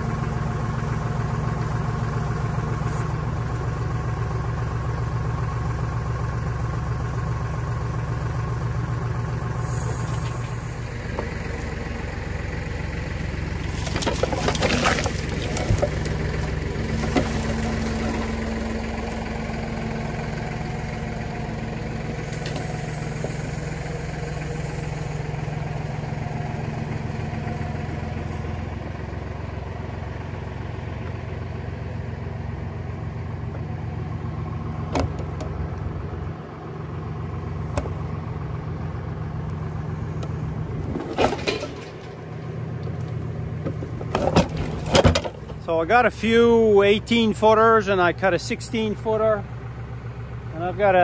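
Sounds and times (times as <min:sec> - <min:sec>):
vehicle engine running steadily: 0:00.0 - 0:51.0.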